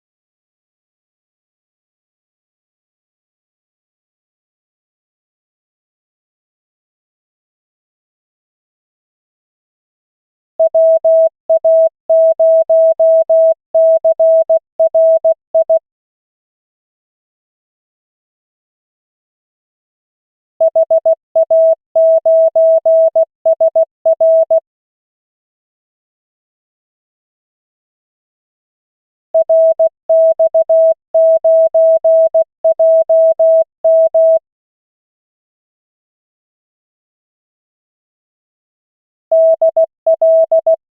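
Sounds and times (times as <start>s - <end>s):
morse code tone: 10.6s - 15.8s, 20.7s - 24.6s, 29.4s - 34.4s, 39.3s - 40.8s.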